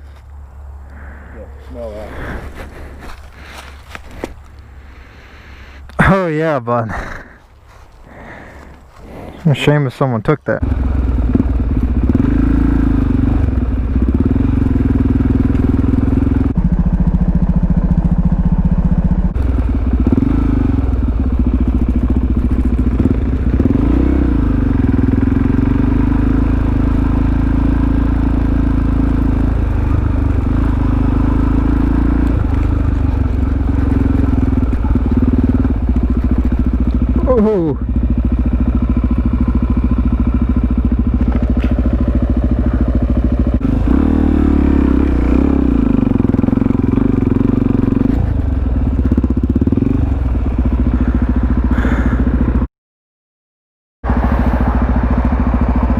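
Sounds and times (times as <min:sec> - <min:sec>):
motorcycle engine revving: 0:08.1 - 0:52.7, 0:54.0 - 0:55.9.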